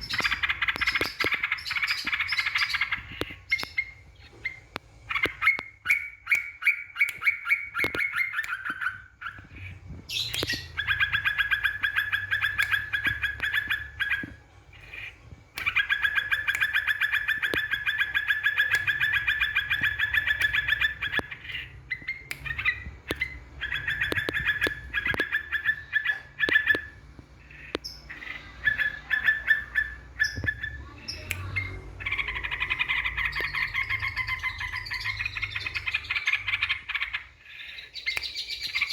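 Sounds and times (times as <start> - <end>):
bird chattering song: 0.0 - 38.9.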